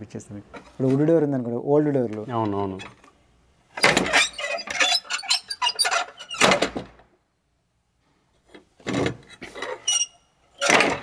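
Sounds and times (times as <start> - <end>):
wooden door creaking: 3.7 - 7.1, 8.8 - 11.0.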